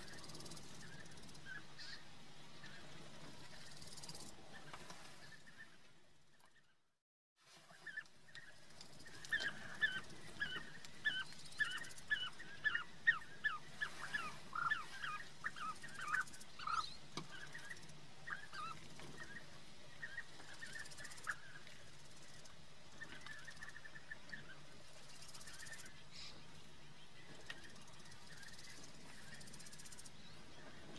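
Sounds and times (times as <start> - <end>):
bee-eater rolling calls: 7.7 - 26.3.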